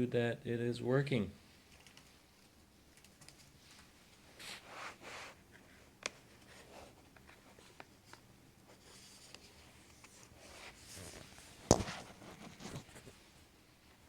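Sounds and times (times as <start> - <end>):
soft rubbing on laptop: 3.5 - 13.9.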